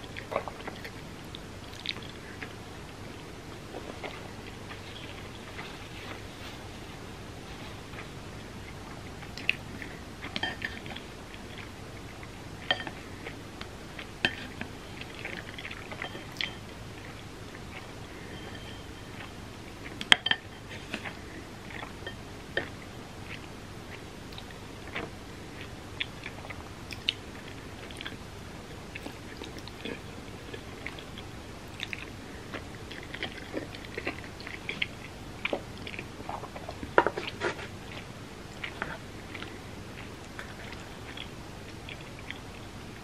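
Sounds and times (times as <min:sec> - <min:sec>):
chewing with wet mouth clicks: 0:00.0 - 0:02.6, 0:22.6 - 0:28.2, 0:28.9 - 0:42.6.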